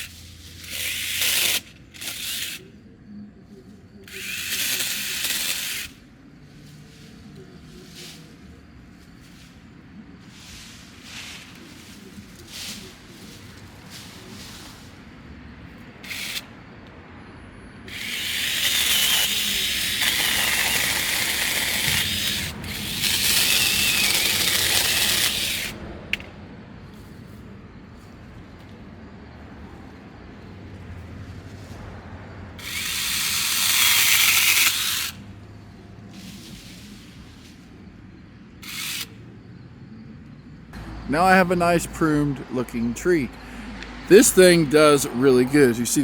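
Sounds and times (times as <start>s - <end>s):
mini chainsaw motor whining: 0.0s - 2.7s, 4.0s - 6.1s, 16.0s - 16.5s, 17.9s - 25.8s, 32.6s - 35.2s, 38.6s - 39.2s.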